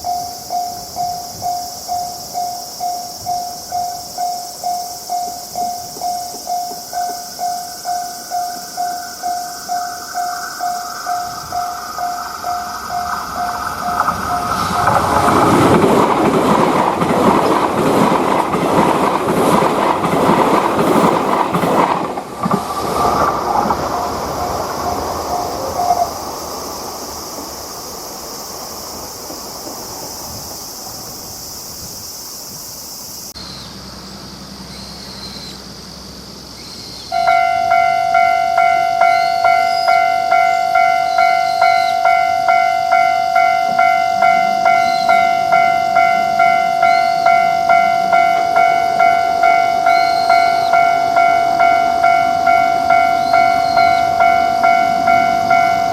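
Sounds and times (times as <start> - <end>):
low hiss: 0.0 - 15.7
crossing warning bell ringing: 0.0 - 26.4, 37.0 - 55.9
train wheels clattering over rails: 0.0 - 31.5.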